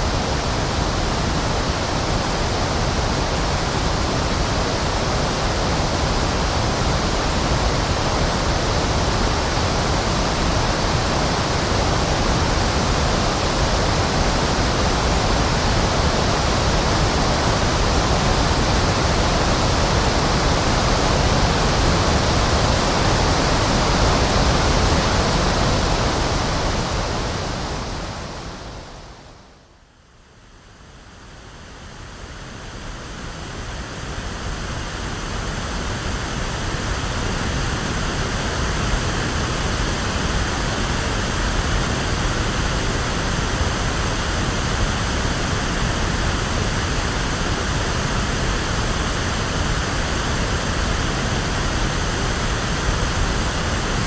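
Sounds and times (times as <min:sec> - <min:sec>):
pink noise hiss: 0:00.0 - 0:29.6.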